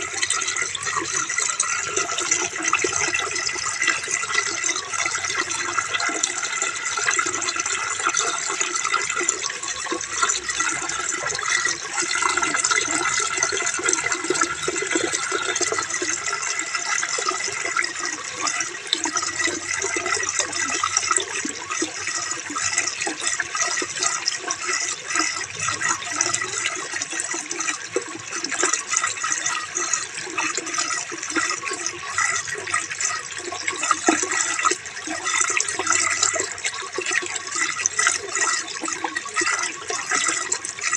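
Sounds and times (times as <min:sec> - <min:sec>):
water splashing and gurgling: 0:00.0 - 0:40.9.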